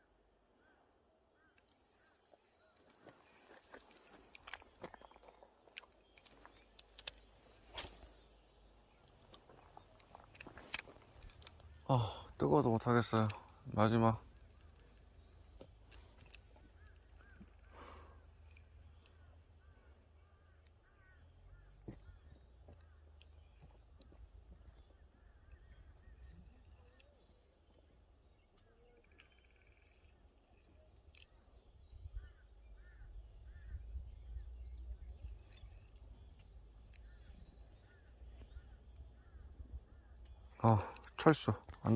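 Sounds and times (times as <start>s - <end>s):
high insect drone: 0.0s - 41.9s.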